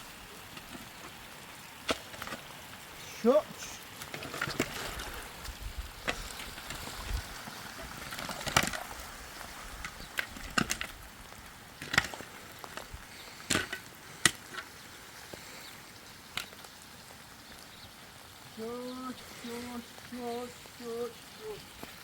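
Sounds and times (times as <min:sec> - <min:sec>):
steady hiss: 0:00.0 - 0:22.0.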